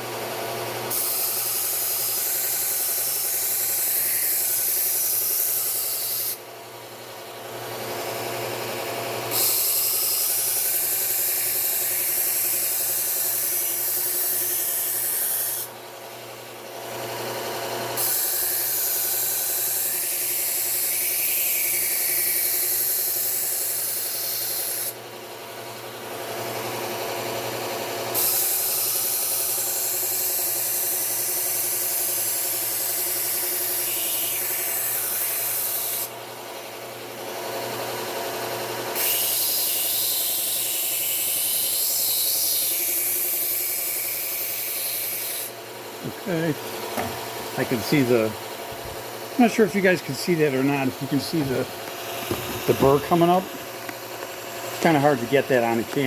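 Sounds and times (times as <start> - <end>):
belt sander grinding steel: 0.8 - 6.4, 9.2 - 15.7, 16.9 - 25.0, 28.1 - 36.2, 37.5 - 56.0
sander motor humming: 45.9 - 56.0.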